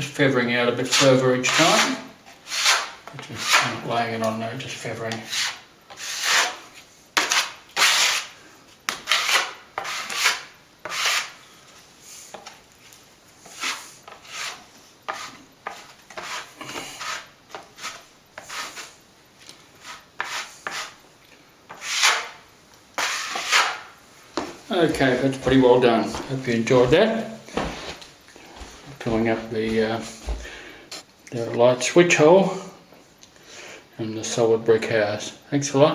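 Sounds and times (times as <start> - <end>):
plastering blade scraping a wall: 0.8 - 3.9, 4.8 - 11.4, 13.4 - 19.0, 19.7 - 21.0, 21.7 - 22.4, 23.0 - 27.0.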